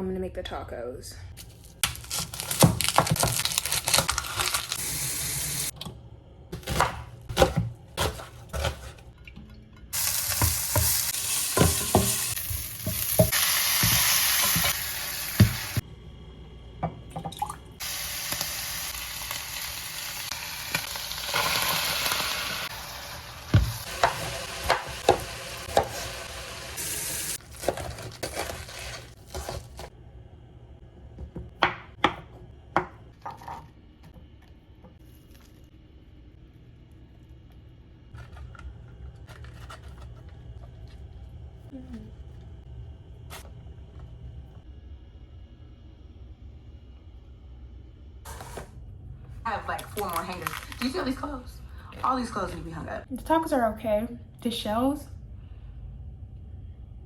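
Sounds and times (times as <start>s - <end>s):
food sizzling in a frying pan: 10.0s - 15.8s, 17.8s - 27.4s.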